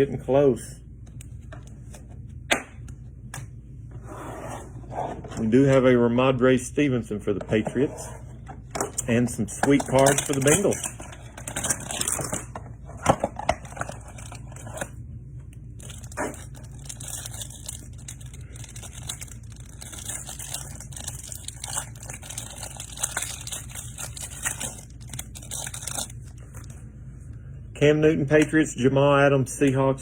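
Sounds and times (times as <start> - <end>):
packaging tearing and crinkling: 9.8 - 12.5, 13.6 - 14.9, 15.8 - 26.8.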